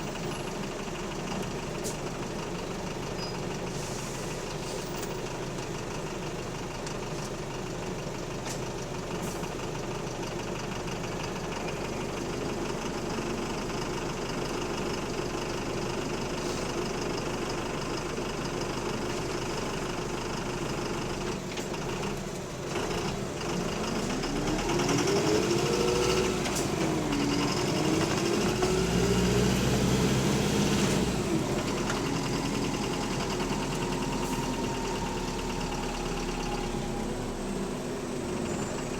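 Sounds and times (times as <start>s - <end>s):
diesel engine with rod knock: 4.4s - 11.8s, 19.1s - 37.7s.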